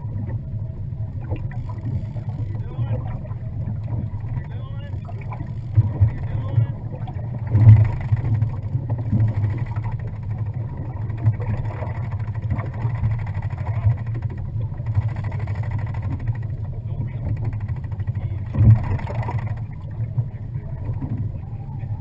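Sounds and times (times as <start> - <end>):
boat motor droning: 0.0 - 22.0.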